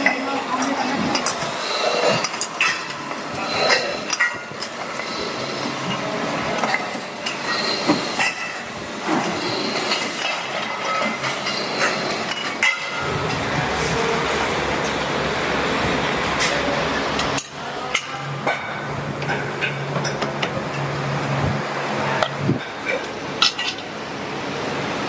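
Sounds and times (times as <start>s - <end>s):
steady machinery noise: 0.0s - 25.0s.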